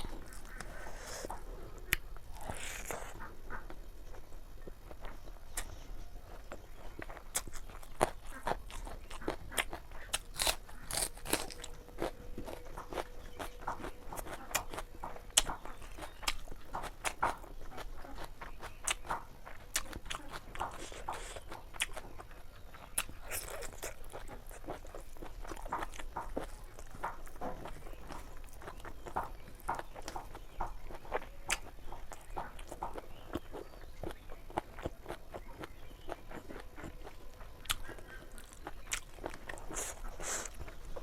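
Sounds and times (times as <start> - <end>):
chewing and crunching bones: 0.0 - 41.0.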